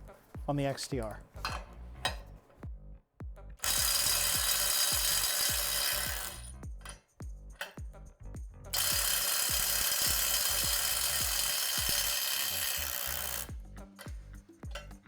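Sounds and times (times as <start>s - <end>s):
background music with steady beat: 0.0s - 15.0s
impact driver hammering: 3.6s - 7.0s, 8.8s - 14.9s.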